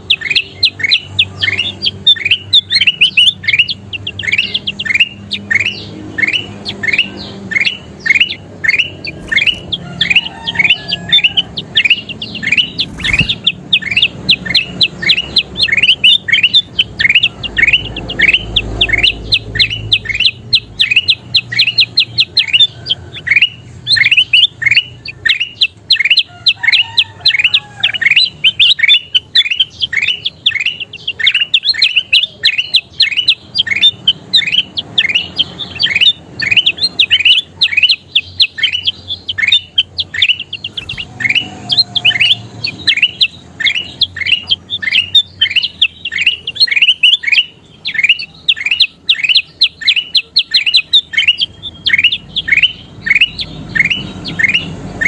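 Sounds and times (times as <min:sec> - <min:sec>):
bulbul singing short chirps: 0:00.0 - 0:26.2.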